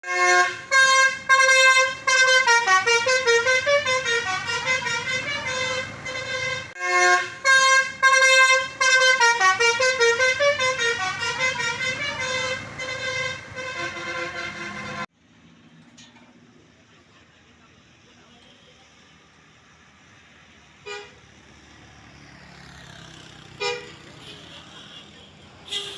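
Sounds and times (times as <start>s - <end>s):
multi-tone bus air horn tune: 0.0s - 15.1s, 20.8s - 21.3s, 23.5s - 25.9s.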